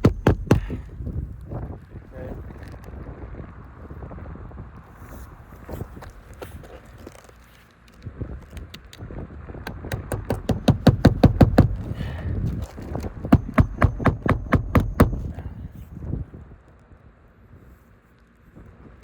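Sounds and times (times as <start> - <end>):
light hammer taps: 0.0 - 0.7, 9.7 - 12.1, 13.3 - 15.4
hammer striking roofing nails: 0.0 - 0.8, 9.7 - 15.5.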